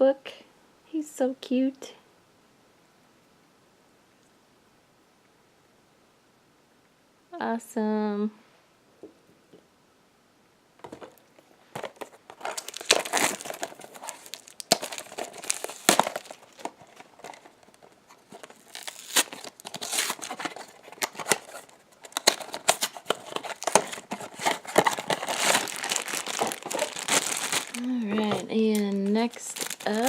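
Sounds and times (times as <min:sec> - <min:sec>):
packaging torn and crinkled: 0:11.8 - 0:30.0.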